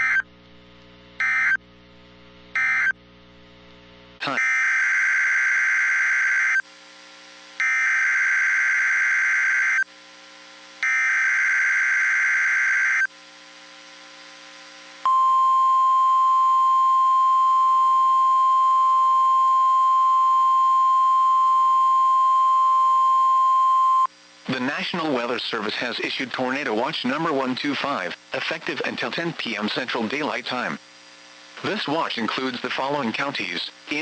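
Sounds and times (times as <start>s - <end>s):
steady warning alarm tone: 1.2s - 1.6s, 2.6s - 3.0s, 4.4s - 6.6s, 7.6s - 9.9s, 10.8s - 13.1s.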